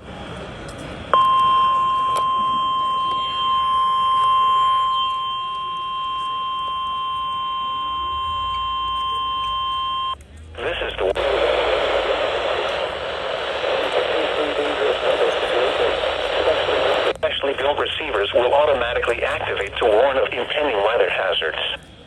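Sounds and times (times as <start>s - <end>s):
steady alarm beep: 1.2s - 10.2s.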